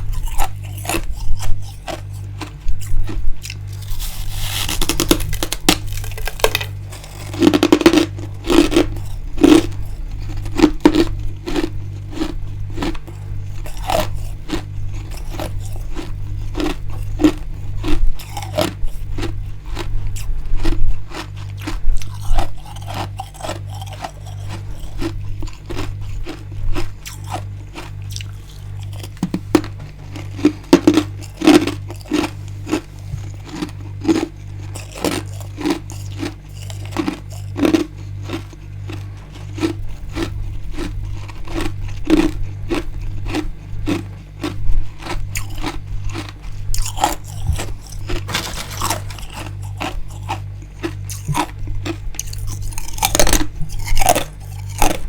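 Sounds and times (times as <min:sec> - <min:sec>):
pulsing low hum: 0:00.0 - 0:21.2
frost crunching in mouth: 0:00.0 - 0:55.0.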